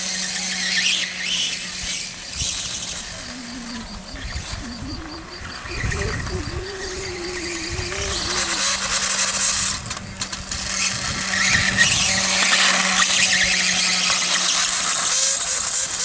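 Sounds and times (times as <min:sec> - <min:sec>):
electric motor whining: 0:00.0 - 0:16.0.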